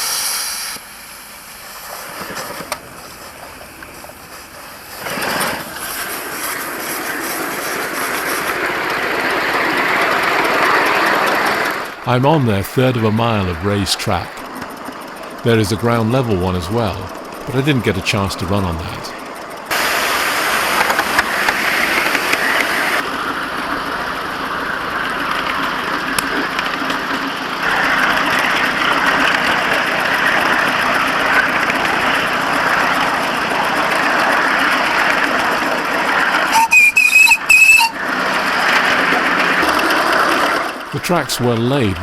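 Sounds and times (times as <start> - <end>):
steam locomotive hissing: 0.0 - 41.8
loud steam whistle bursts: 36.5 - 38.0.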